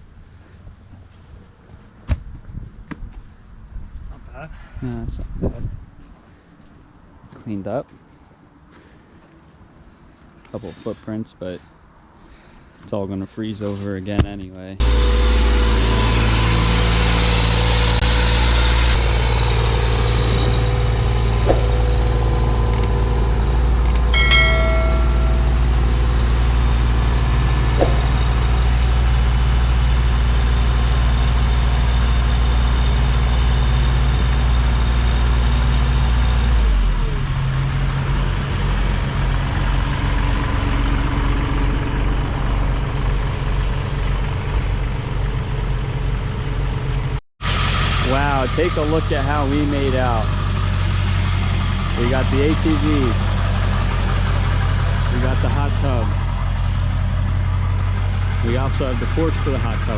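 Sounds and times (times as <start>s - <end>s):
vehicle engine droning: 13.4s - 59.9s
high tones: 23.9s - 28.6s.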